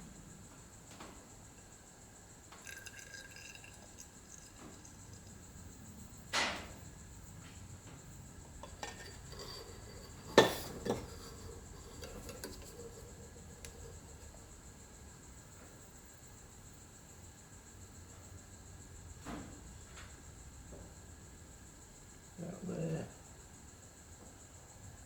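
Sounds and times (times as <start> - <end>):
tools and container clinking: 2.6 - 5.2, 8.6 - 14.3.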